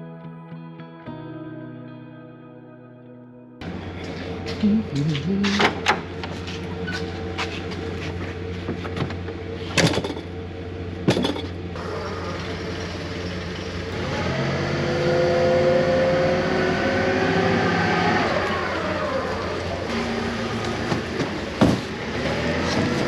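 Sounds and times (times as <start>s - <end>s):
vehicle engine running: 3.6s - 23.0s
whining drone: 3.6s - 23.0s.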